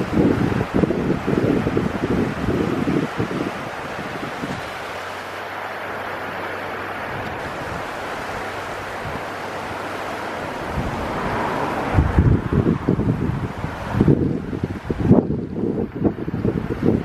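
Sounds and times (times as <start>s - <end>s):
outdoor rushing noise: 0.0s - 15.5s
wind buffeting microphone: 0.0s - 17.0s.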